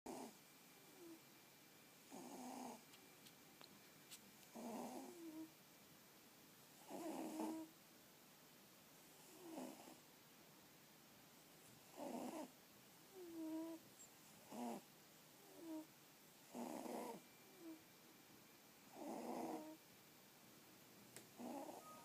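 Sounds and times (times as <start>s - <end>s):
cat snoring: 0.1s - 1.2s, 2.0s - 2.8s, 4.5s - 5.5s, 6.8s - 7.7s, 9.1s - 10.0s, 11.8s - 12.5s, 13.1s - 13.8s, 14.4s - 17.8s, 18.9s - 19.8s, 21.4s - 22.0s.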